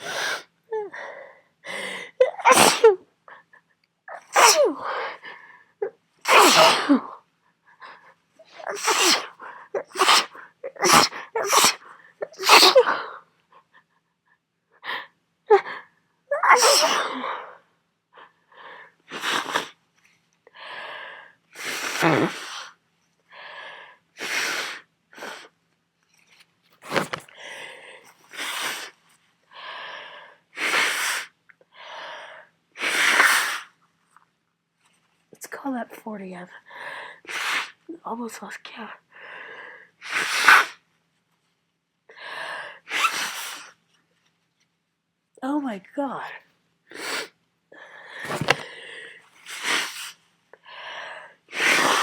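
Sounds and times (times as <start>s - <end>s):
person sneezing: 2.2s - 3.0s, 4.1s - 4.8s, 6.3s - 7.1s, 8.6s - 12.9s, 16.4s - 17.2s, 48.2s - 48.7s.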